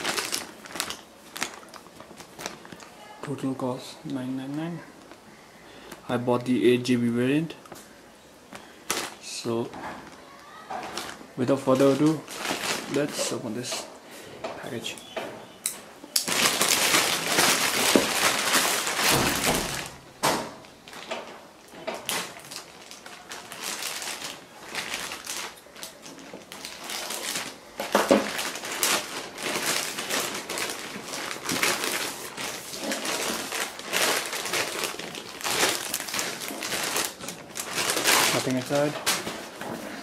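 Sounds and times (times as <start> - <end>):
packaging rustling and tearing: 0.0 - 3.1, 8.6 - 13.8, 16.2 - 20.0, 20.6 - 40.0.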